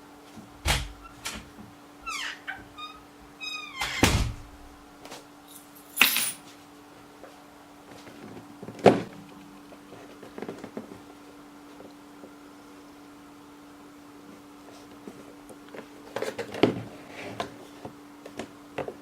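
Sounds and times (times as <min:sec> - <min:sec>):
faint steady hum: 0:00.0 - 0:19.0
high squeak: 0:02.0 - 0:04.1.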